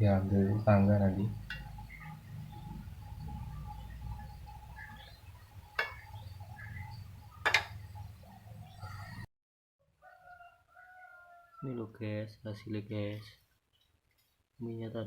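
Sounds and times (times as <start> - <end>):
low steady hum: 0.0 - 9.3
utensil clinking against dish: 7.4 - 7.8.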